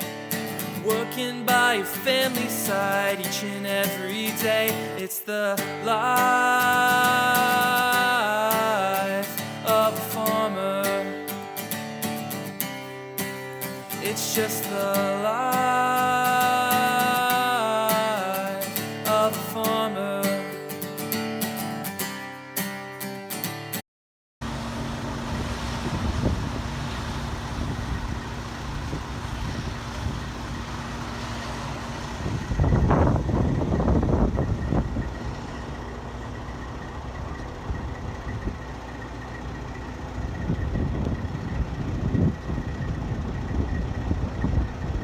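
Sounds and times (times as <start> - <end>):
heavy vehicle engines running: 24.4 - 45.0.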